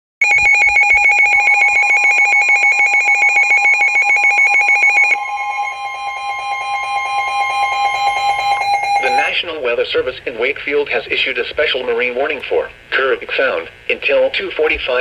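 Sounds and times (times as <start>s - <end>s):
electronic alarm tones pulsing: 0.2s - 9.4s.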